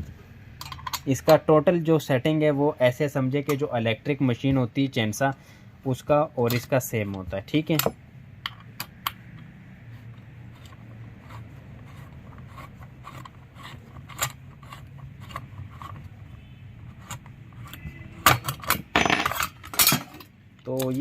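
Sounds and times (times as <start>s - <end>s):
metal parts clicking and tapping: 0.6s - 1.4s, 6.4s - 9.5s, 12.3s - 16.1s, 16.9s - 21.0s.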